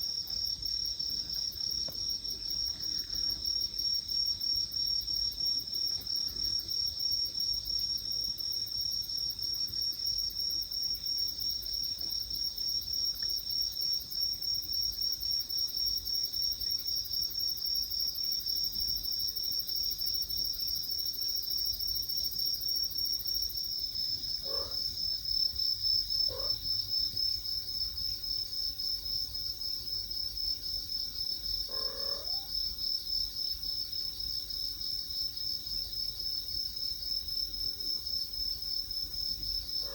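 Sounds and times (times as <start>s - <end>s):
crickets chirping: 0.0s - 39.9s.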